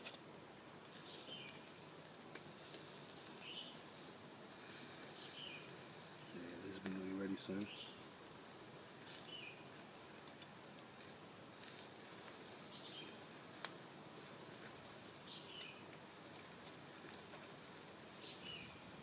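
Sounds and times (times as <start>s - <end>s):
faint steady hiss: 0.0s - 19.0s
wood fire crackling and popping: 0.0s - 19.0s
bird chirping: 1.0s - 1.7s, 3.4s - 3.8s, 5.1s - 6.8s, 7.5s - 8.0s, 9.0s - 9.7s, 12.6s - 13.2s, 15.2s - 15.8s, 18.2s - 18.9s.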